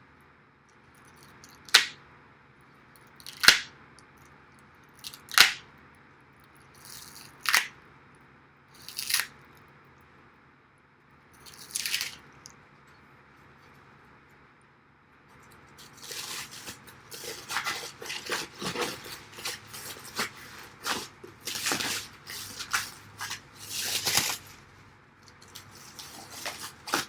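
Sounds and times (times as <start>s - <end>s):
packing wrap ripping: 11.4s - 12.2s, 15.8s - 24.8s, 25.4s - 27.0s.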